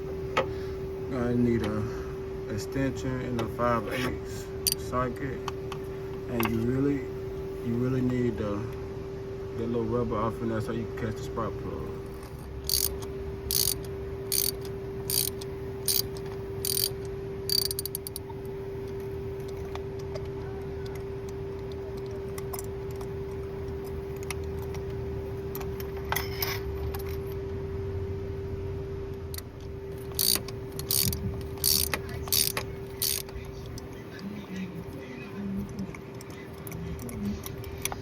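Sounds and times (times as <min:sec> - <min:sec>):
steady low hum: 0:00.0 - 0:38.0
hand ratchet clicking: 0:12.1 - 0:18.2, 0:29.3 - 0:33.8.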